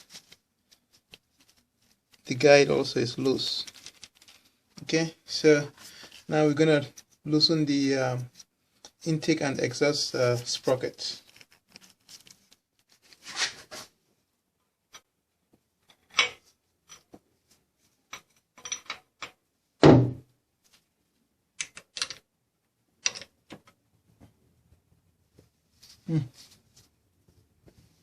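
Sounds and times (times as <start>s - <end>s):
heavy thunk: 19.8s - 20.2s.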